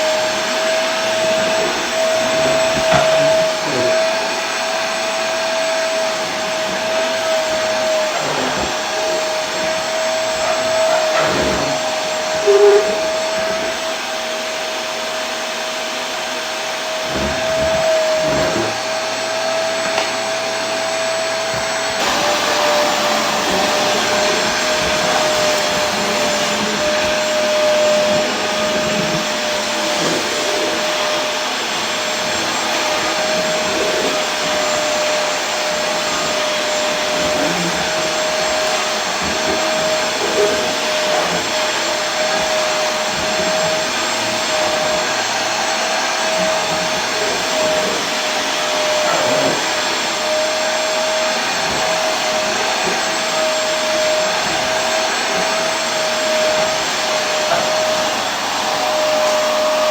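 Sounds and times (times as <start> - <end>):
vacuum cleaner running: 0.0 - 59.9.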